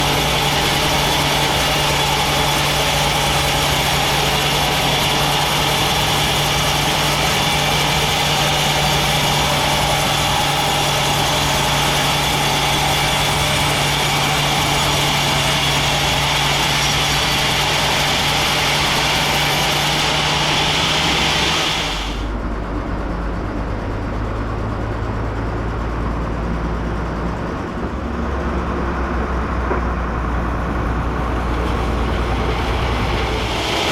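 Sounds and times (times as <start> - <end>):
band saw cutting log: 0.0 - 22.3, 31.4 - 33.9
low machine hum: 0.0 - 33.9.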